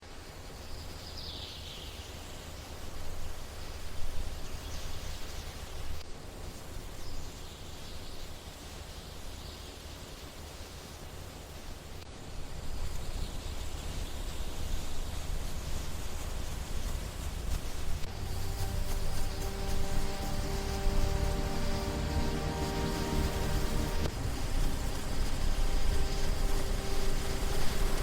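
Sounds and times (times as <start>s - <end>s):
wind on microphone: 14.6s - 28.0s.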